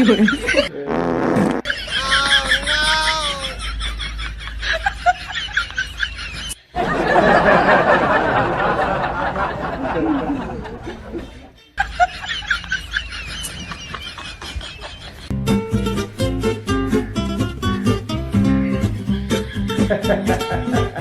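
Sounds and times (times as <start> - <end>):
people snickering and laughing: 0.0 - 0.8, 1.6 - 15.3, 19.2 - 21.0.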